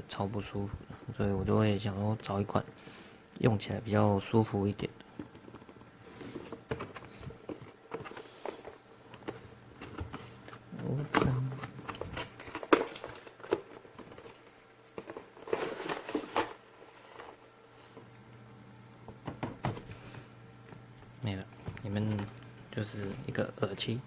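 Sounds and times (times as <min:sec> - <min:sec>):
packaging rustling: 0:05.1 - 0:17.5.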